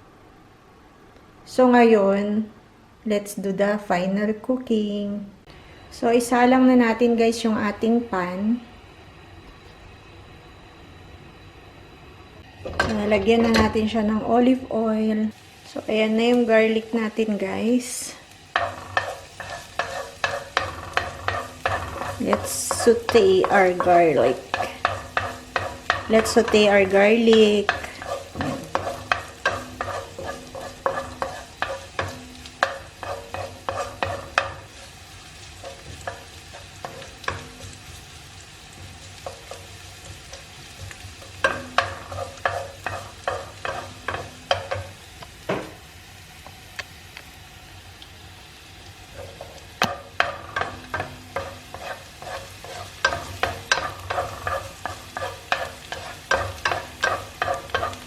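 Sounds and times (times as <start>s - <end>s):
garlic sizzling in a frying pan: 3.2s - 58.0s
utensil scraping a pan: 18.5s - 34.8s, 35.5s - 38.0s, 39.2s - 44.9s, 49.1s - 58.0s.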